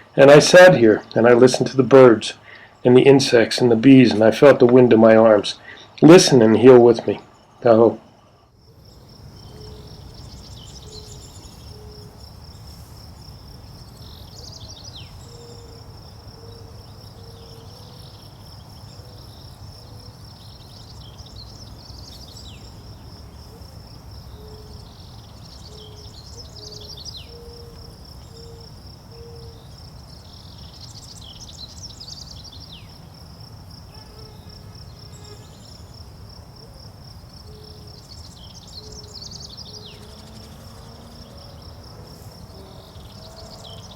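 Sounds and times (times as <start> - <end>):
songbirds chirping: 0.0 - 43.9
insect trilling: 33.7 - 43.9.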